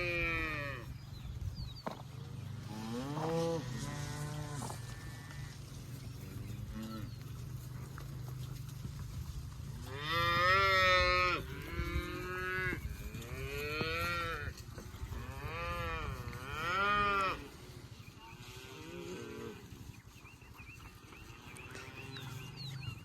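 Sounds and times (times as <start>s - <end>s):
cows mooing: 0.0s - 0.9s, 2.6s - 8.4s, 9.7s - 19.8s, 21.3s - 22.8s.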